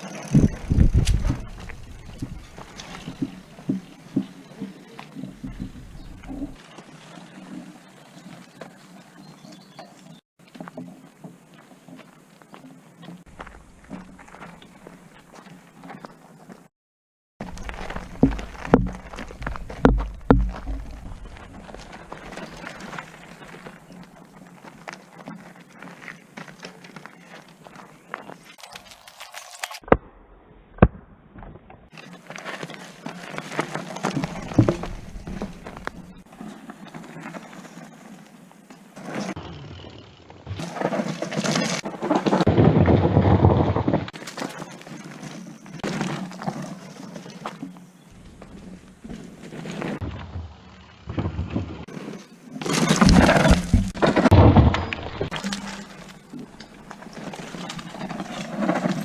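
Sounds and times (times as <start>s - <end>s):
bike tyres crunching over gravel: 0.0s - 16.7s, 17.4s - 29.8s, 31.9s - 59.0s
sharp knocks from bike: 17.7s - 21.2s.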